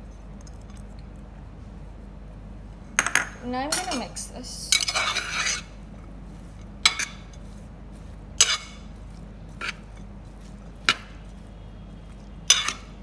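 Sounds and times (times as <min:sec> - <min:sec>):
spoon clinking against bowl: 0:03.0 - 0:05.6, 0:12.5 - 0:12.9.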